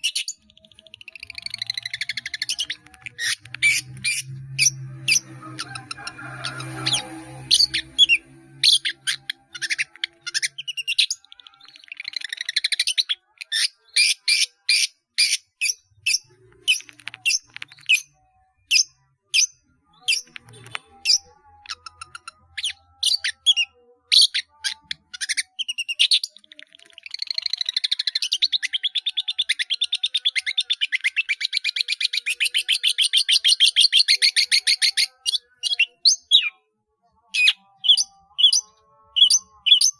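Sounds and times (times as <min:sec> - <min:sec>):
shrike singing: 0:00.0 - 0:14.5.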